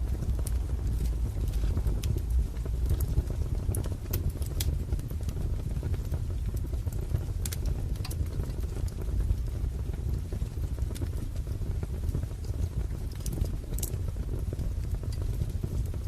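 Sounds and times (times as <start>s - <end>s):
low rumble of burning logs: 0.0s - 16.0s
wood fire crackling: 0.0s - 16.0s.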